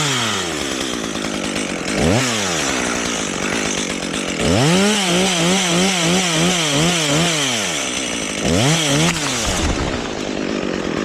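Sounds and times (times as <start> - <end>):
chainsaw cutting wood: 0.0 - 11.0.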